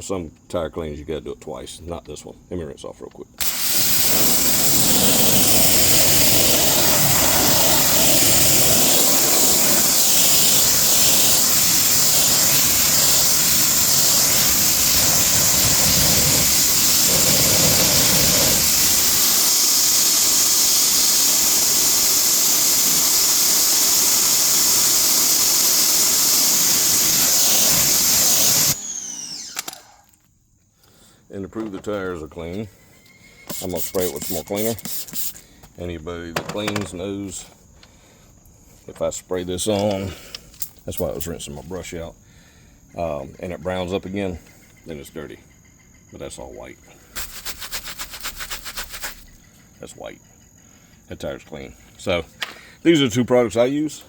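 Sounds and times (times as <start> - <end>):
water jet hissing: 3.4 - 28.9, 33.5 - 35.4, 47.2 - 49.4.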